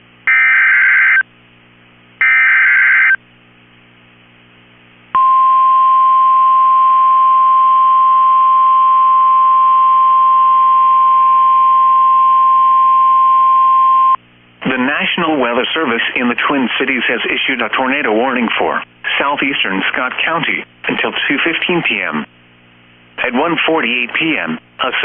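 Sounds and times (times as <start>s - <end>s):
steady warning alarm tone: 0.3s - 1.2s, 2.2s - 3.2s.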